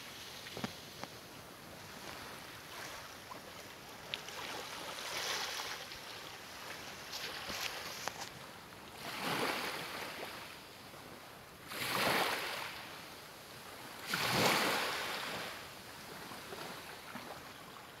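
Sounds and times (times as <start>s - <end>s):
ocean waves breaking: 9.0s - 10.6s, 11.7s - 12.8s, 14.0s - 15.6s.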